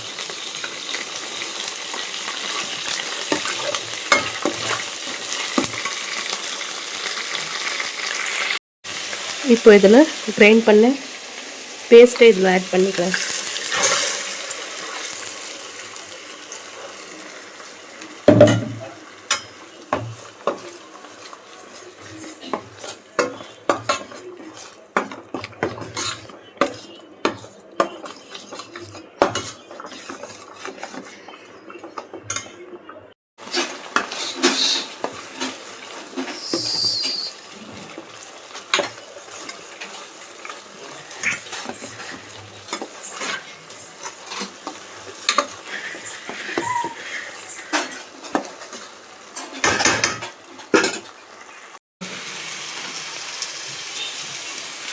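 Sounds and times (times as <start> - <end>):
light sizzle: 0.0 - 26.3, 33.4 - 54.9
spoon scraping a frying pan: 0.5 - 6.4, 12.8 - 15.3, 18.4 - 32.6, 33.4 - 51.8.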